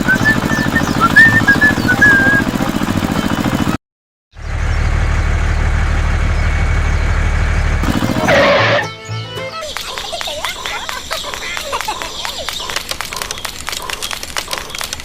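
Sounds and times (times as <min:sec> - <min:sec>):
small engine chugging: 0:00.0 - 0:03.8, 0:04.4 - 0:15.0
short pitched sound: 0:04.4 - 0:09.4
steady low drone: 0:04.4 - 0:09.5.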